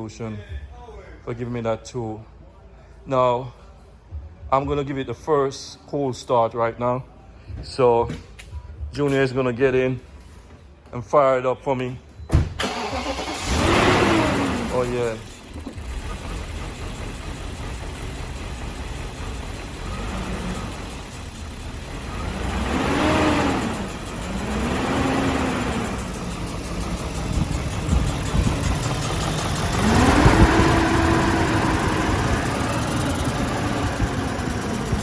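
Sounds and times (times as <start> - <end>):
car engine revving and idling: 12.6 - 35.0.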